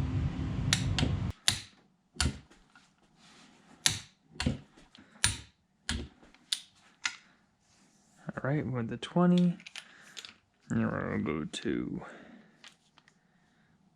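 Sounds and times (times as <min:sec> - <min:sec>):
low background hum: 0:00.0 - 0:02.8.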